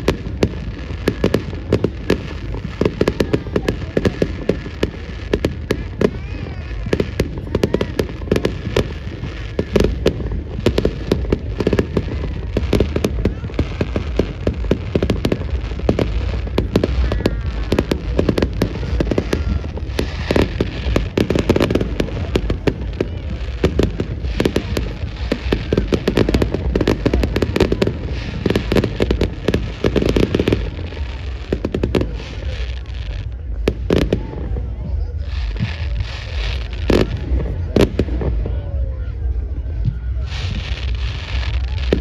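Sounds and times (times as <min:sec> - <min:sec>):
bonfire crackling and popping: 0:00.0 - 0:42.0.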